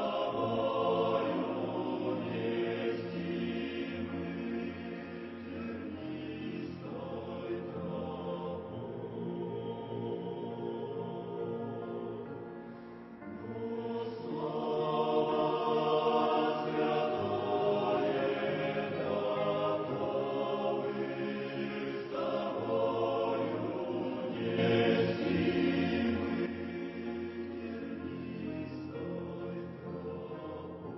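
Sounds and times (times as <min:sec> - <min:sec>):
choir singing a hymn: 0:00.0 - 0:30.9.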